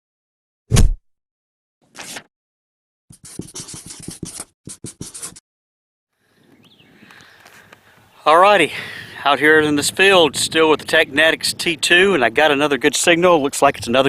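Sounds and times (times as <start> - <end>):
scratching strokes: 3.2 - 5.4
faint outdoor background: 6.1 - 14.0.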